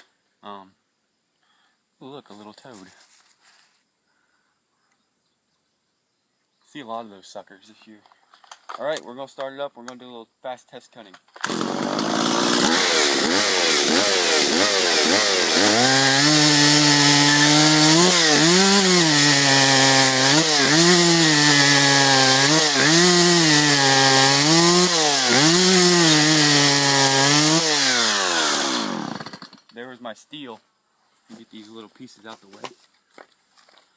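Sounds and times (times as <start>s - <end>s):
chainsaw revving: 11.4s - 29.6s
chainsaw cutting wood: 11.4s - 29.7s.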